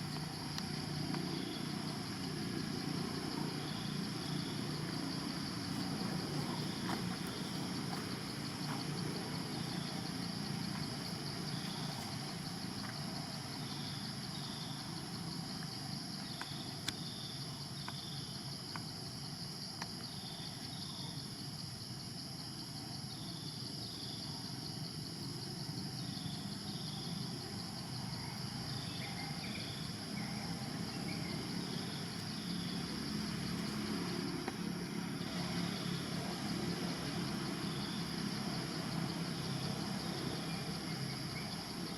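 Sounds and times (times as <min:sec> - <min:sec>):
high-pitched insect drone: 0:00.0 - 0:21.3.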